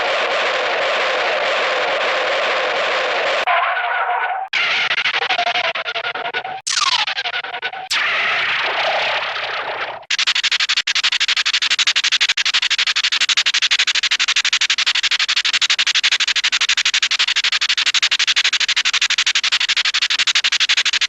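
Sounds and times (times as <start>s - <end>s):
cartoon skid screech: 0.0s - 10.1s.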